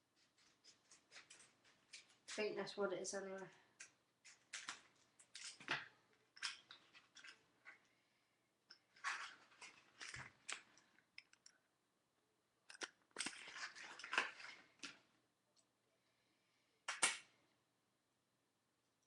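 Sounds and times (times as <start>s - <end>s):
sharp snap: 16.9s - 17.3s.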